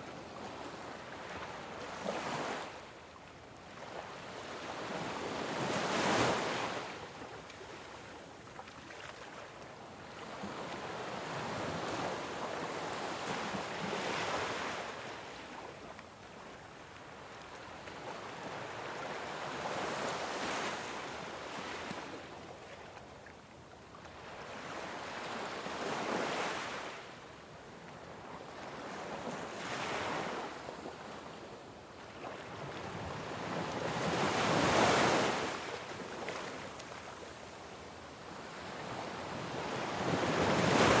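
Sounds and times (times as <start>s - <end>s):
ocean waves washing onto shore: 39.5s - 41.0s.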